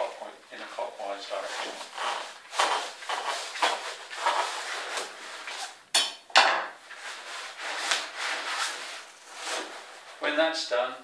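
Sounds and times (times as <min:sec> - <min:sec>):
banner rustling while wound: 0:01.3 - 0:05.8.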